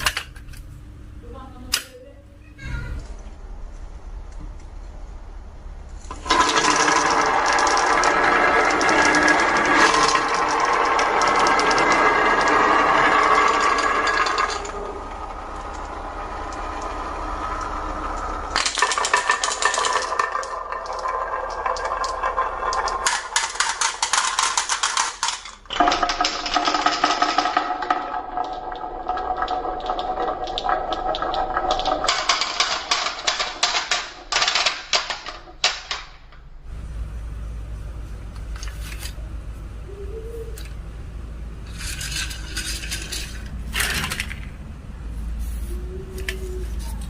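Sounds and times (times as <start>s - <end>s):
marbles clattering down wooden track: 6.0s - 36.4s, 41.6s - 44.6s.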